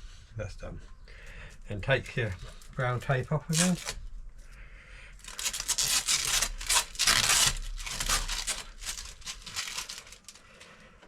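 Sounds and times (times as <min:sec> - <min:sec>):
tape being peeled off: 0:03.5 - 0:04.0, 0:05.2 - 0:10.5.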